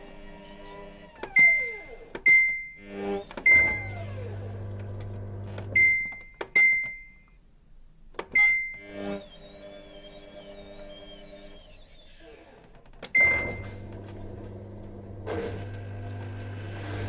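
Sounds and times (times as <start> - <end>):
washing machine low hum: 1.2 - 7.2, 13.1 - 17.0.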